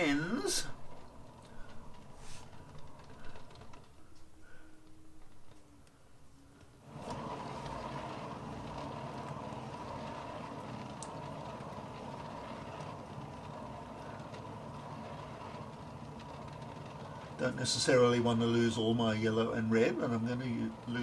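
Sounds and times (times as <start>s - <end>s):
blow dryer running: 6.8s - 21.0s.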